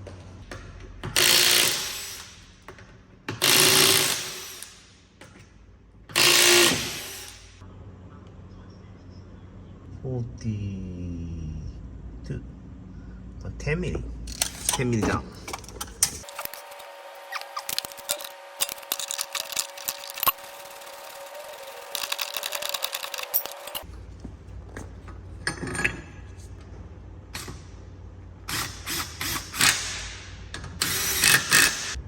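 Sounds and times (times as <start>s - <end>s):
machine whine: 16.2s - 23.8s.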